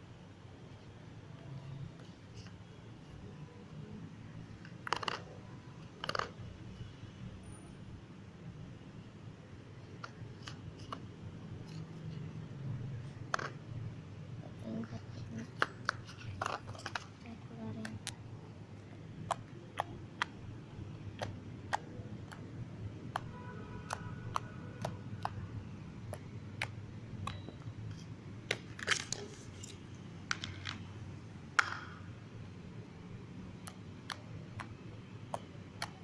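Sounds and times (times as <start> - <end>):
plastic clicks and taps: 4.6 - 5.3, 6.0 - 6.3, 31.6 - 32.0, 33.6 - 36.0.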